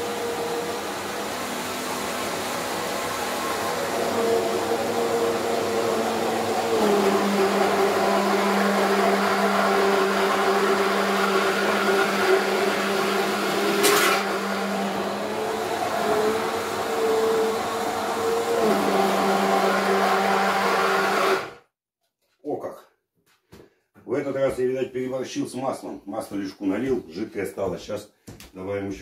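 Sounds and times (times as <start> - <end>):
immersion blender running: 0.0 - 21.6.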